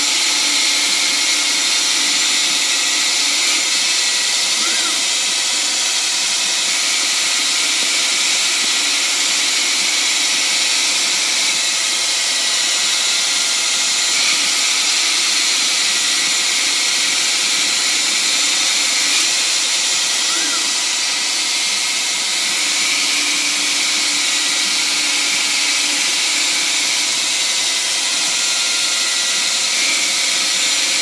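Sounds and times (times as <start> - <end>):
lathe whirring hiss: 0.0 - 31.0.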